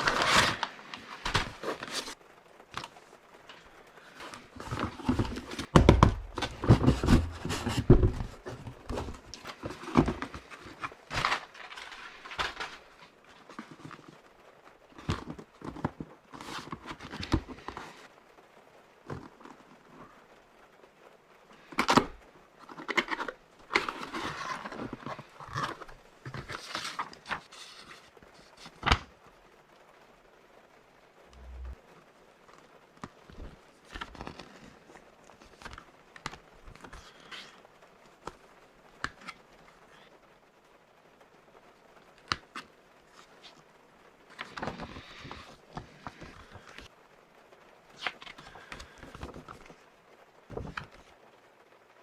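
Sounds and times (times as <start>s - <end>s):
packaging rustling and crinkling: 0.0s - 18.2s, 19.0s - 20.4s, 21.5s - 29.2s, 32.4s - 40.2s, 42.0s - 46.9s, 47.9s - 49.9s, 50.5s - 51.2s.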